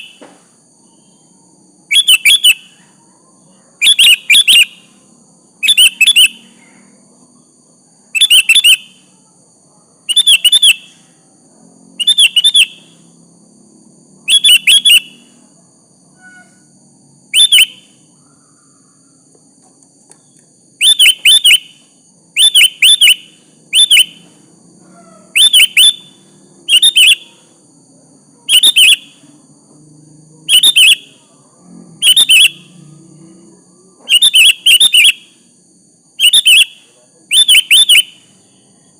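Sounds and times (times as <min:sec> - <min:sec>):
bird calling sharp notes: 0:01.9 - 0:02.8, 0:03.8 - 0:04.9, 0:05.6 - 0:06.5, 0:08.2 - 0:09.1, 0:10.1 - 0:11.0, 0:12.0 - 0:13.0, 0:14.3 - 0:15.3, 0:17.3 - 0:18.6, 0:20.8 - 0:27.5, 0:28.5 - 0:29.2, 0:30.5 - 0:31.2, 0:32.0 - 0:32.8, 0:34.1 - 0:35.4, 0:36.2 - 0:38.3.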